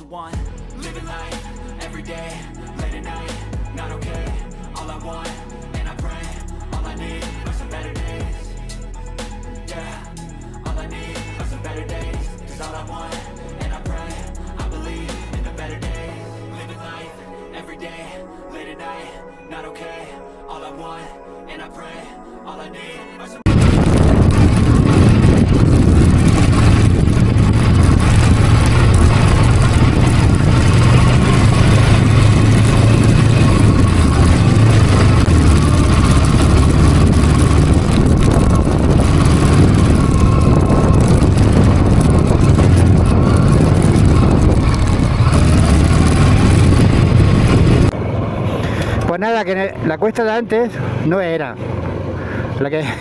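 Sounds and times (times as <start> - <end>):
motorcycle engine running: 0.4 - 5.1, 23.5 - 48.0
rushing noise: 23.5 - 50.0.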